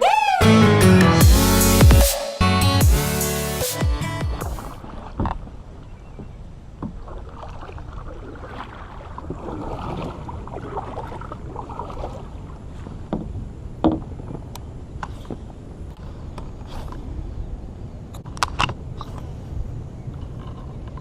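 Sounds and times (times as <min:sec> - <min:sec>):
water splashing around kayak: 0:04.6 - 0:17.2.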